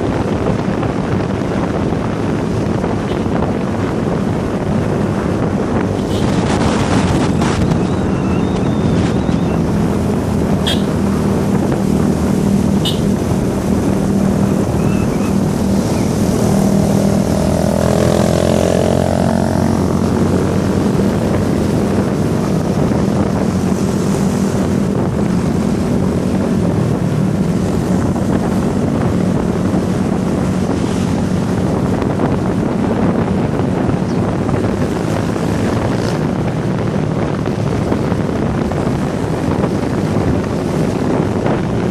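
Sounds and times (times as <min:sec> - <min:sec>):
wind noise on microphone: 0:00.0 - 0:41.9
vehicle engine running: 0:04.8 - 0:41.9.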